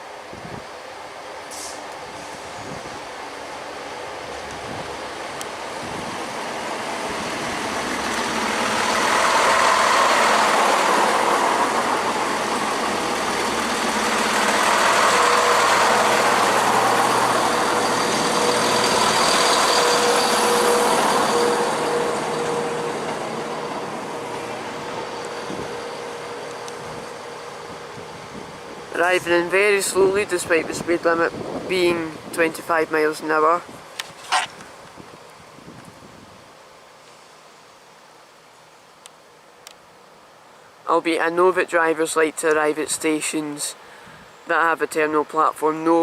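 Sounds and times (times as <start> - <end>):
diesel train engines: 0.0 - 46.0
steady whine: 3.4 - 31.0
train wheels: 4.3 - 28.0.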